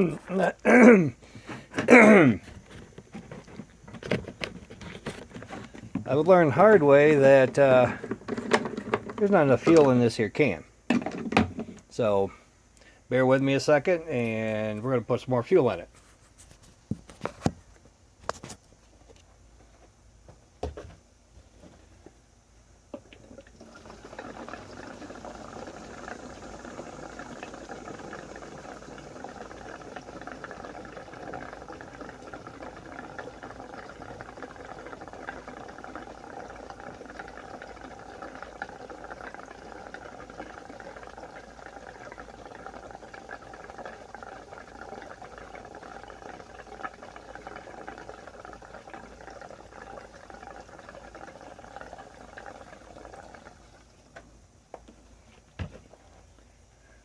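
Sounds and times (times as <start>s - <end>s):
gasoline pouring and gurgling: 0.0s - 12.2s, 22.9s - 56.1s.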